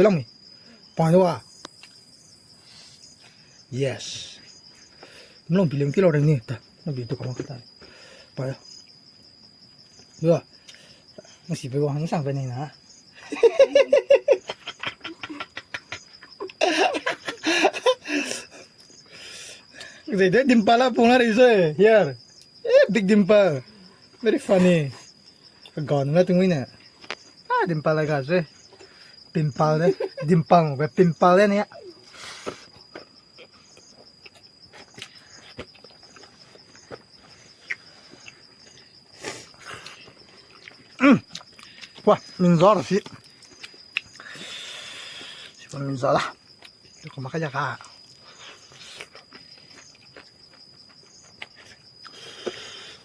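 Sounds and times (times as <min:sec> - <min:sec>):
insects trilling: 0:00.0 - 0:53.0
people laughing: 0:13.2 - 0:18.6, 0:29.8 - 0:30.4.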